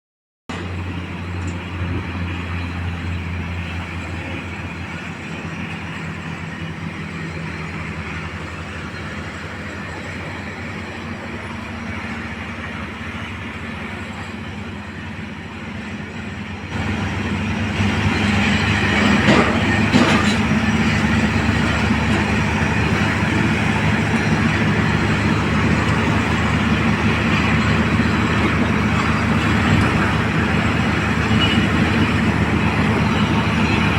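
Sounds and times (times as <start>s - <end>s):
heavy machinery engine rumble: 0.5s - 33.9s.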